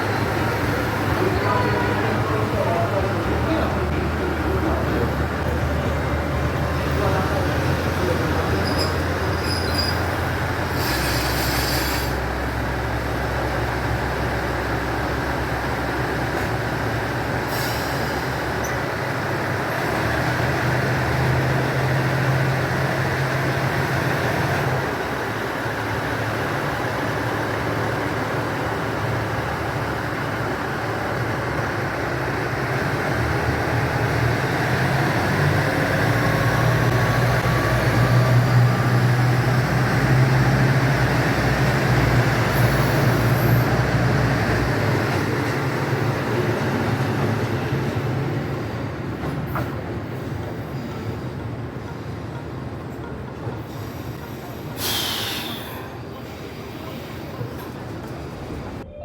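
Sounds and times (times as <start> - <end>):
diesel engine hum: 0.0 - 10.8, 12.1 - 49.1
train wheels rumbling on rails: 0.0 - 59.0
short hiss: 54.8 - 55.7.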